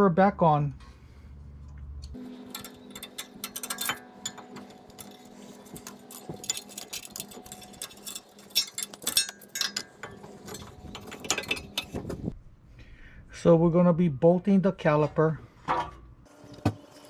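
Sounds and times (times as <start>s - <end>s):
metal brake parts clinking: 2.2s - 12.3s.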